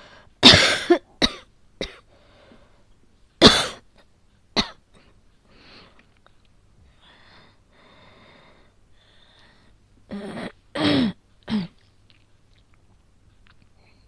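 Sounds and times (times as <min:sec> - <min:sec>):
woman coughing harshly: 0:00.4 - 0:02.0, 0:03.4 - 0:03.8, 0:04.6 - 0:04.8, 0:10.1 - 0:11.8.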